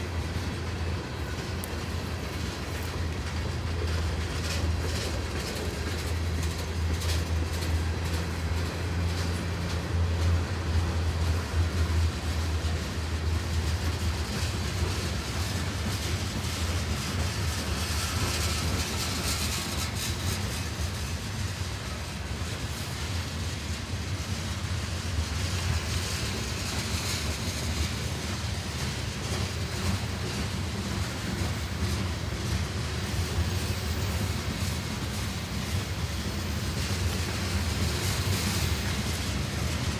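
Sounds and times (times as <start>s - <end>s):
train wheels rumbling on rail: 0.0s - 39.9s
wheels clicking over rail joints: 0.0s - 39.9s.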